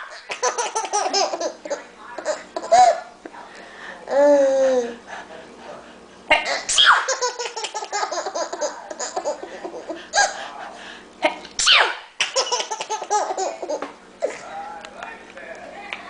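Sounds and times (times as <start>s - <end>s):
baby laughing: 0.0s - 3.1s, 6.4s - 10.4s, 11.7s - 14.4s.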